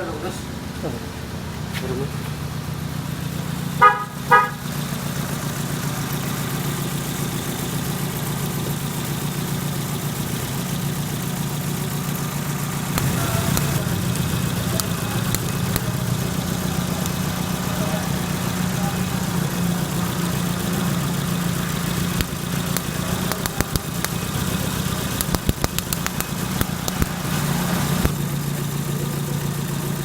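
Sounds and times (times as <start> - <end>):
car engine idling: 0.0 - 30.0
short loud horn beeps: 3.8 - 4.6.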